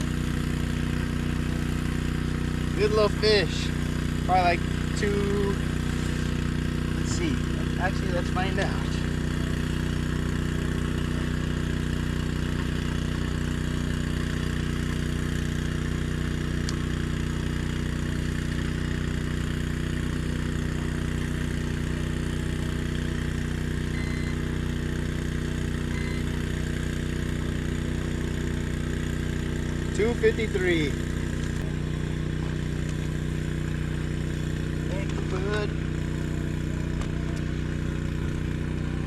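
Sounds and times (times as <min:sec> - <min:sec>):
boat engine idling: 0:00.0 - 0:39.0
faint short beeps: 0:23.9 - 0:24.5, 0:25.9 - 0:26.4.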